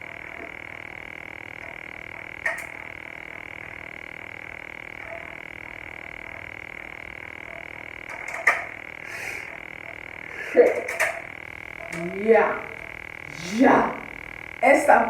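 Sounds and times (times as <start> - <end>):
high-pitched pulsing drone: 9.0 - 15.0.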